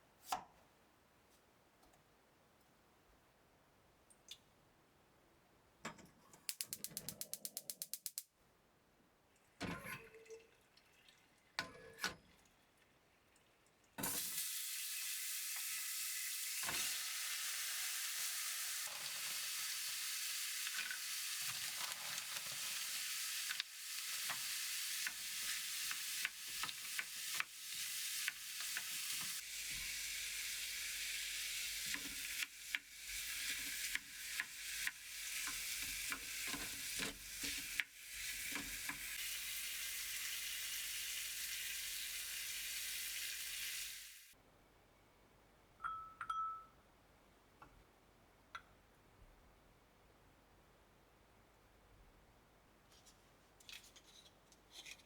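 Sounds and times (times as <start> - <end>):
food sizzling in hot pan: 14.0 - 44.4
utensil scraping and tapping pan: 35.4 - 37.9.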